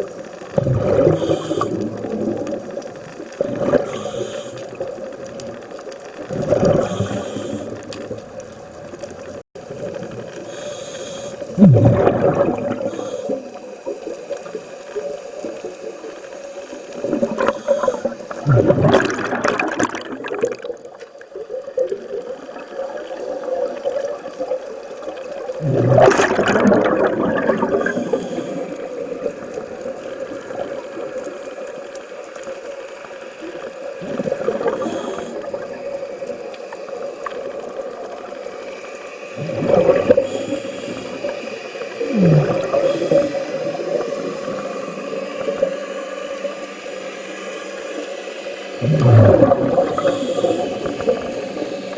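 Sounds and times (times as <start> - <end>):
underwater exhalation bubbles: 0.0 - 10.6, 11.4 - 13.5, 17.0 - 31.0, 34.0 - 36.3, 39.4 - 41.4, 42.0 - 44.8, 48.8 - 51.9.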